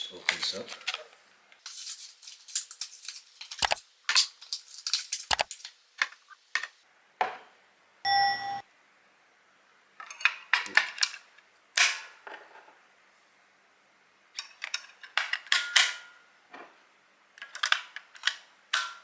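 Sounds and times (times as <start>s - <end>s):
short ringing ding: 8.1s - 8.6s.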